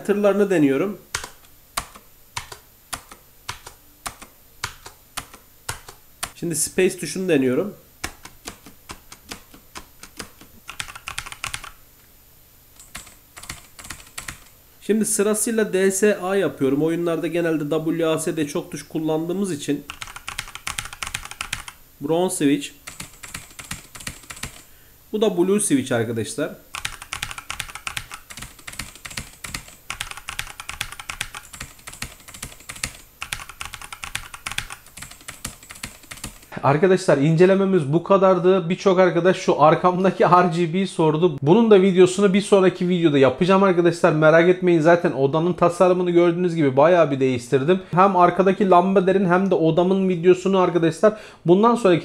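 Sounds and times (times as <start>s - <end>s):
mechanical keyboard typing: 1.1s - 6.4s, 8.0s - 11.8s, 12.8s - 14.5s, 19.9s - 21.8s, 22.8s - 24.6s, 26.7s - 36.5s.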